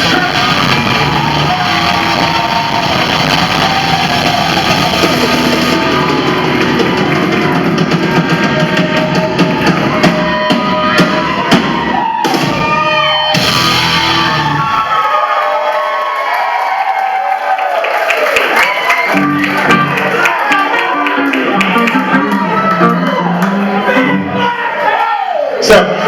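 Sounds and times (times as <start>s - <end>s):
sliding bending guitar notes: 0.0s - 11.2s, 12.7s - 14.7s, 19.1s - 24.6s
live rock band: 0.0s - 14.8s, 19.0s - 24.4s.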